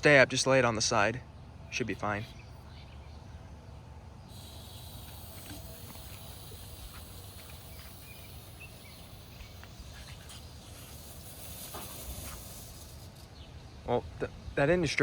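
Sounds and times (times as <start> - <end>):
smoke bomb hissing: 4.3 - 13.4.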